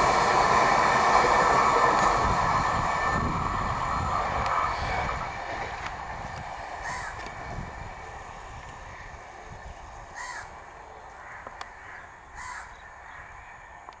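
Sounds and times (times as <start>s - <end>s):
crows cawing: 6.8s - 7.3s, 10.2s - 13.5s.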